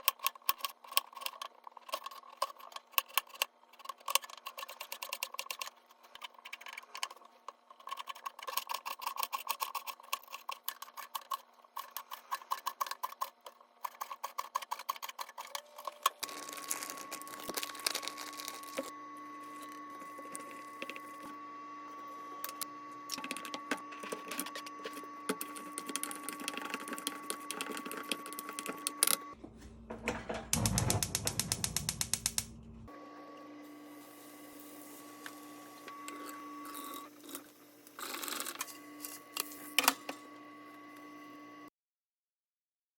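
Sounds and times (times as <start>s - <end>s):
steady electric hum: 15.7s - 32.9s
kitchen utensils clicking and tapping: 29.7s - 32.5s.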